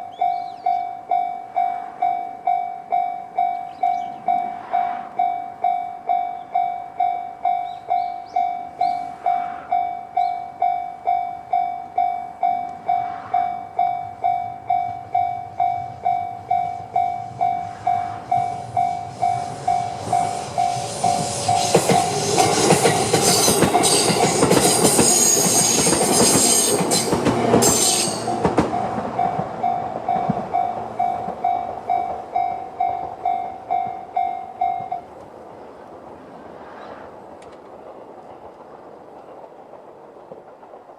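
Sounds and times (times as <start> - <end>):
train wheels rattling over rails: 10.6 - 40.9.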